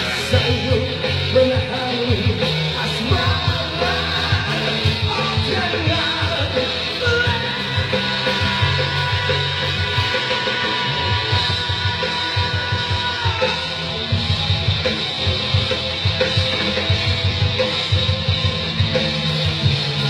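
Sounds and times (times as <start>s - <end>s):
drum kit beat: 0.0s - 20.0s
electric guitar: 0.0s - 20.0s.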